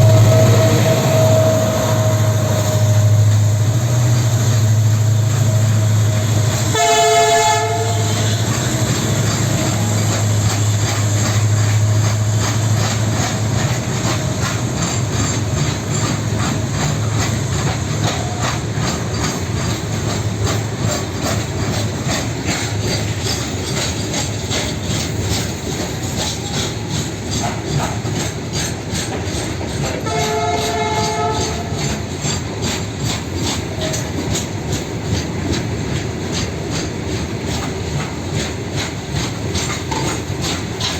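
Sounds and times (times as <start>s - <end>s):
train horn: 0.0s - 4.1s, 4.9s - 8.7s, 30.0s - 31.8s
locomotive engine humming: 0.0s - 40.9s
train wheels clickety-clack: 0.0s - 40.9s.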